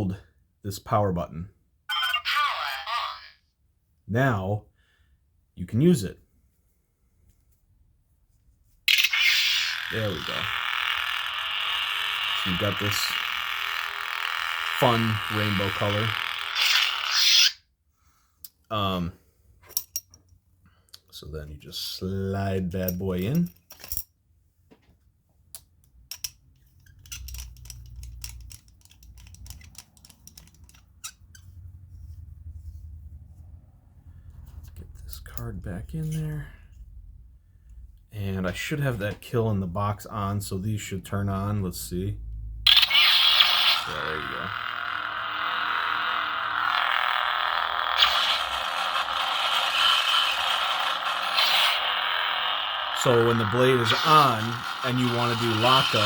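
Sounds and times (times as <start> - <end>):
lightsaber blade hum: 42.7 - 56.0.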